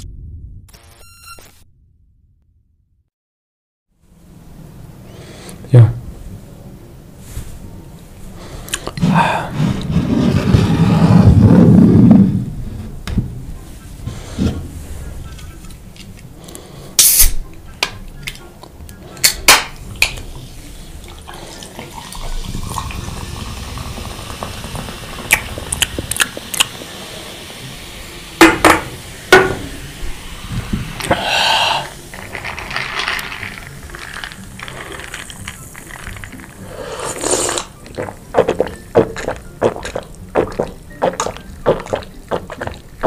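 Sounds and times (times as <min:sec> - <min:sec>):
close eating sounds: 0:08.3 - 0:11.0, 0:31.0 - 0:43.0.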